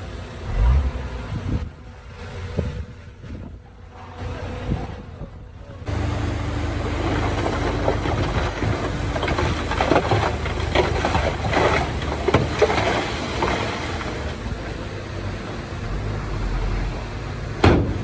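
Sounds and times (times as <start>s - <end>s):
heavy machinery diesel engine: 0.0s - 18.0s
metallic clanks and knocks: 6.8s - 14.4s.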